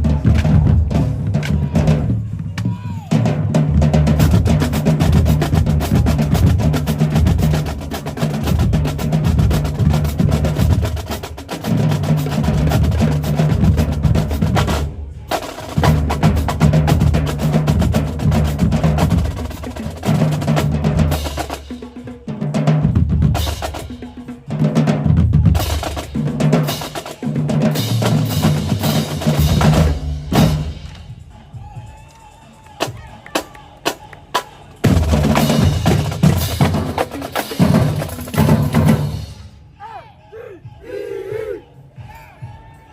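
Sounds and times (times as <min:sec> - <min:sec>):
rapid snare drum strikes: 0:00.0 - 0:31.9, 0:32.6 - 0:39.5
pitched bass drums: 0:00.0 - 0:39.6.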